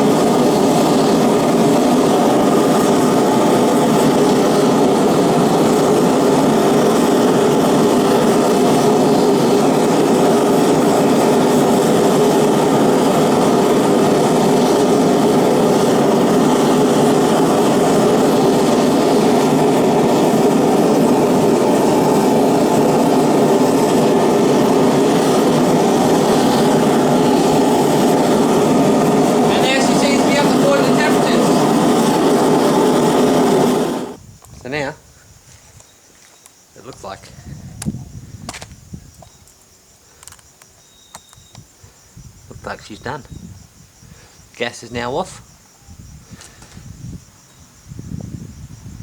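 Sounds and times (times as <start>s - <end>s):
gas forge burner rushing: 0.0s - 34.2s.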